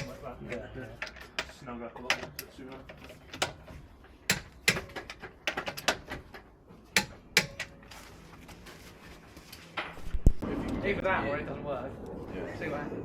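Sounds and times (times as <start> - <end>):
clicks and knocks of hand tools: 0.0 - 7.9.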